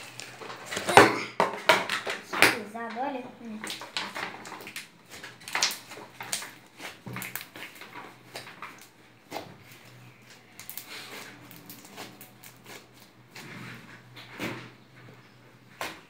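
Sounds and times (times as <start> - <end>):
slime squelching and popping: 3.6 - 13.4.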